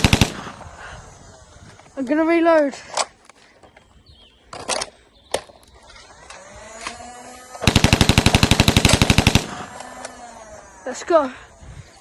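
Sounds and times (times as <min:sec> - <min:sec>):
rapid automatic blaster fire: 0:00.0 - 0:00.6, 0:07.6 - 0:09.8
toy blaster reload clicks: 0:04.6 - 0:10.9.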